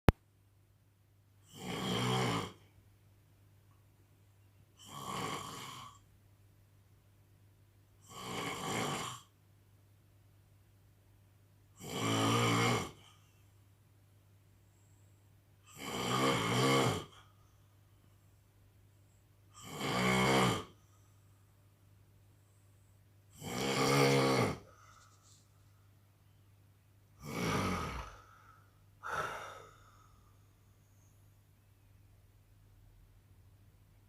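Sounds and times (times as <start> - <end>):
man snoring: 1.4 - 2.7, 4.8 - 6.0, 8.0 - 9.3, 11.8 - 13.2, 15.6 - 17.3, 19.5 - 20.8, 23.3 - 25.1, 27.2 - 30.2.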